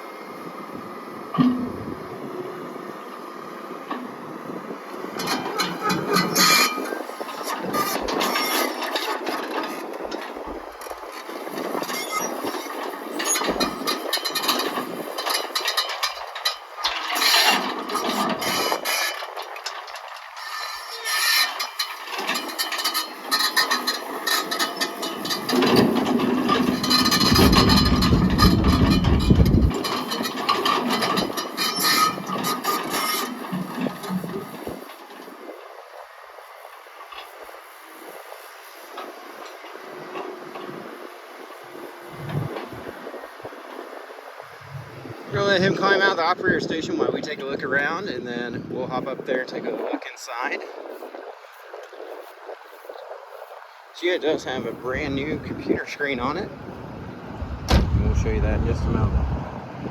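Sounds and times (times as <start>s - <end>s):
excavator engine running: 0.0s - 46.8s, 53.8s - 59.9s
hydraulic noise: 1.1s - 35.6s
clanks and knocks of machine: 1.3s - 1.8s, 5.2s - 35.0s
steady whine: 52.2s - 59.9s.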